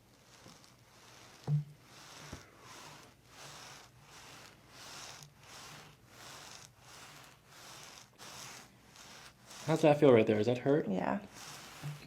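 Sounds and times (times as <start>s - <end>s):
hands rubbing skin and fabric: 0.0s - 12.0s.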